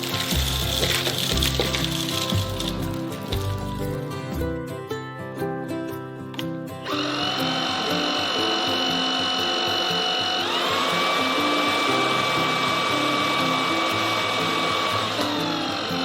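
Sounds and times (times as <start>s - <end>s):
vacuum motor whining: 0.0s - 3.6s, 6.8s - 16.0s.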